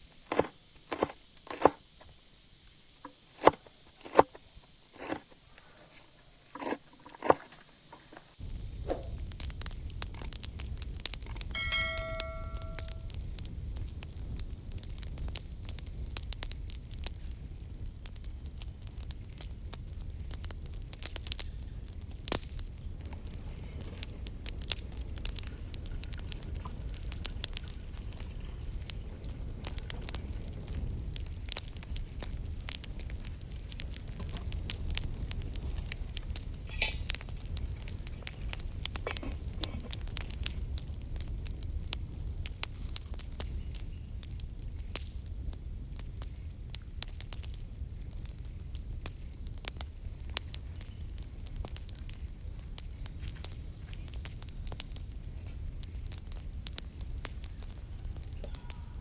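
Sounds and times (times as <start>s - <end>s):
wood fire rumbling and crackling: 8.3s - 59.0s
brief ringing tone: 11.6s - 13.0s.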